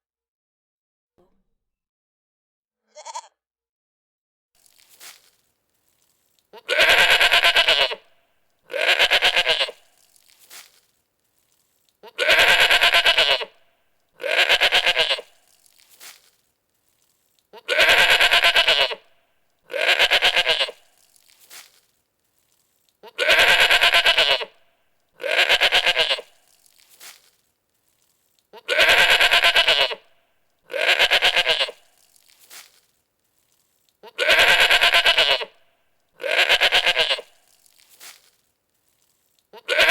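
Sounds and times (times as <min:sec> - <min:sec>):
goat bleating: 0:02.9 - 0:03.3, 0:06.5 - 0:08.0, 0:08.7 - 0:09.8, 0:12.0 - 0:13.6, 0:14.2 - 0:15.4, 0:17.5 - 0:19.0, 0:19.7 - 0:20.8, 0:23.0 - 0:24.6, 0:25.2 - 0:26.4, 0:28.5 - 0:30.0, 0:30.7 - 0:31.9, 0:34.0 - 0:35.6, 0:36.2 - 0:37.4, 0:39.5 - 0:39.9.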